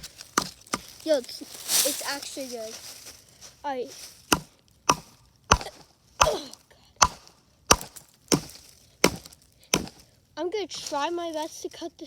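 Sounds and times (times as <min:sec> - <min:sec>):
hand axe chopping wood: 0:00.0 - 0:01.1, 0:04.3 - 0:10.0.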